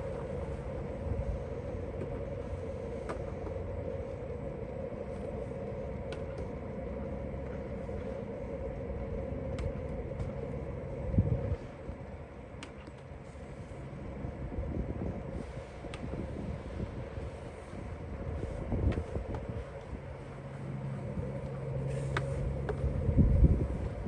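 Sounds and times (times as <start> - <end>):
low outdoor rumble: 0.0 - 24.0.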